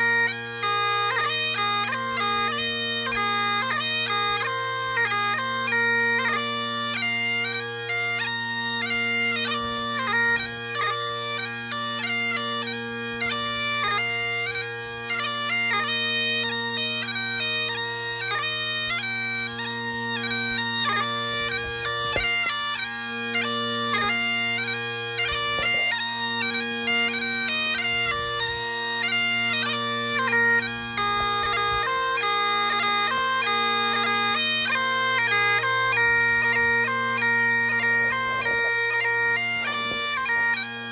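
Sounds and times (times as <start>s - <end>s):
bagpipes playing a march: 0.0s - 40.9s.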